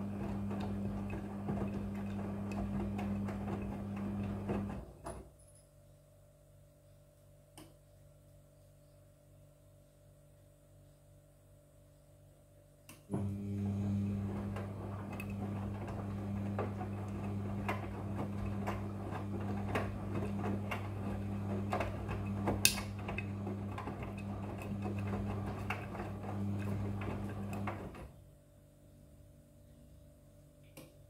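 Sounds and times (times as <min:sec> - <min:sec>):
washing machine motor humming: 0:00.0 - 0:05.2, 0:13.1 - 0:28.3.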